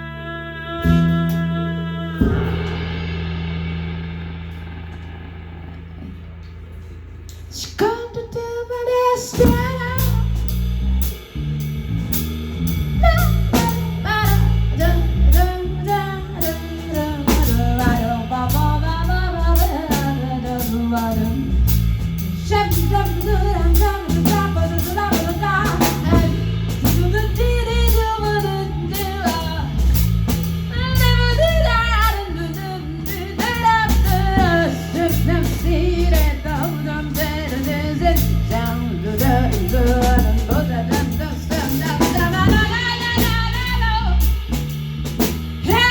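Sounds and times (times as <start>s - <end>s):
drum kit beat: 0.9s - 45.9s
lead singer's voice: 7.4s - 10.4s, 30.7s - 44.3s
live band playing: 9.2s - 45.9s.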